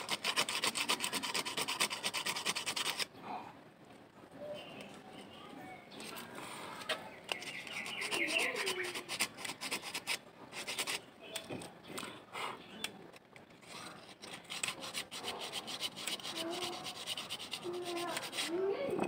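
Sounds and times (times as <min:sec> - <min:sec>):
hand sanding and filing: 0:00.0 - 0:03.1, 0:07.4 - 0:11.0, 0:13.6 - 0:18.9.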